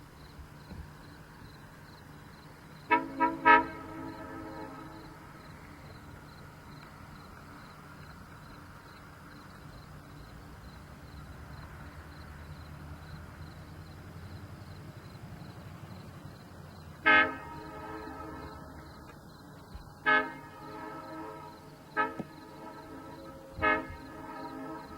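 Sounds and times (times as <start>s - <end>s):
multi-chime air horn blast: 2.9s - 5.4s, 17.0s - 19.0s, 20.0s - 24.9s.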